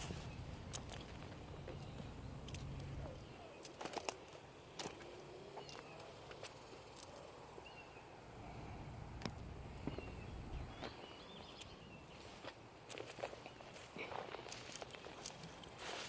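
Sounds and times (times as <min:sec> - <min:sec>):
high-pitched insect drone: 0:00.0 - 0:16.0
faint bird chirps: 0:05.0 - 0:08.8, 0:09.7 - 0:12.4
light clicks and rustles: 0:12.4 - 0:16.0.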